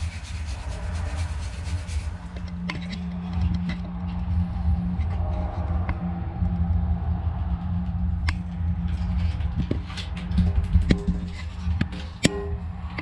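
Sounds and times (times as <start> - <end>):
engine droning: 0.0 - 13.0
hand tools clicking and tapping: 9.5 - 13.0.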